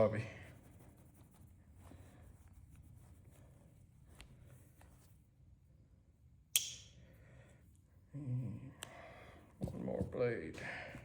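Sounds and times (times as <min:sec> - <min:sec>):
rubbing while polishing blade: 0:00.0 - 0:03.8
sharp click: 0:06.5 - 0:06.9.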